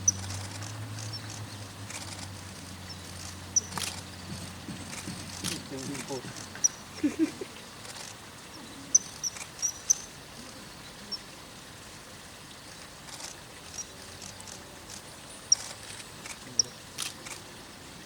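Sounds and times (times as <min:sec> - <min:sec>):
faint outdoor hiss: 0:00.0 - 0:18.0
kingfisher high thin calls: 0:02.8 - 0:07.5, 0:08.5 - 0:11.2.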